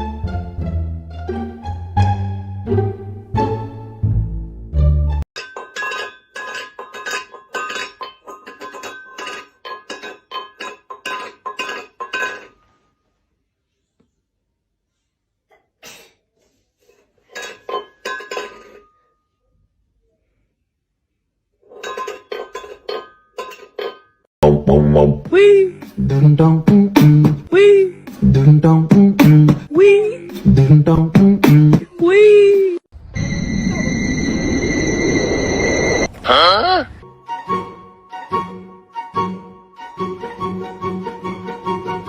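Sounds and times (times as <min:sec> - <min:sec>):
rapid clinking of glass dishes: 0:05.4 - 0:12.7, 0:17.2 - 0:19.2, 0:21.7 - 0:24.2.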